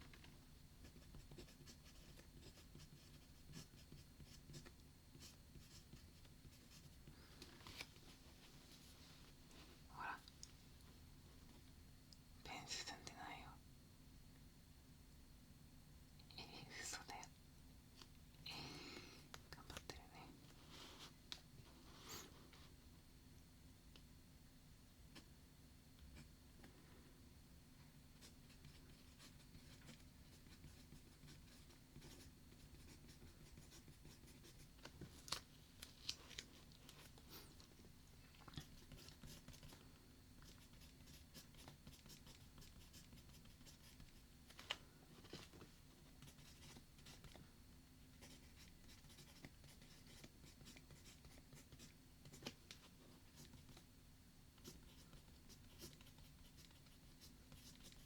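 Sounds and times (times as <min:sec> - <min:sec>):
writing on paper: 0:00.8 - 0:07.0, 0:28.2 - 0:34.7, 0:38.5 - 0:39.8, 0:40.4 - 0:44.2, 0:48.2 - 0:53.9, 0:54.6 - 0:58.0.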